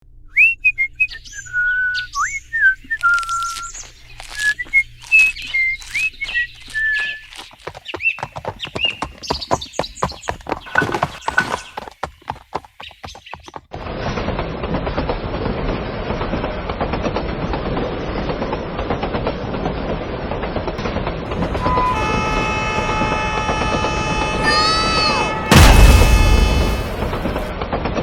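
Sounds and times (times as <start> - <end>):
birds chirping: 1.1 - 13.6.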